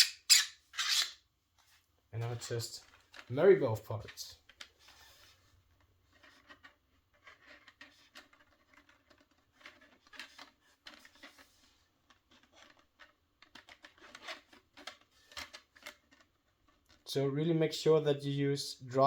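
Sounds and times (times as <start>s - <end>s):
plastic parts scraping together: 0.0s - 17.1s.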